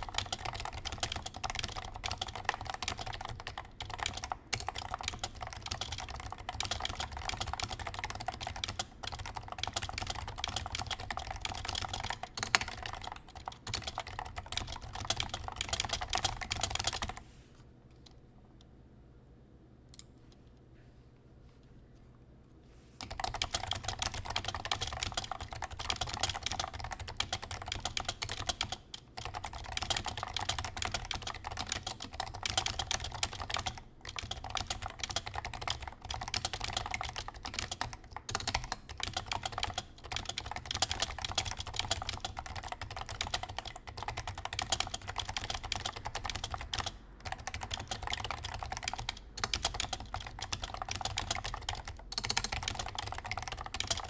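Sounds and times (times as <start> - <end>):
fast keyboard typing: 0.0 - 17.2, 23.0 - 54.0.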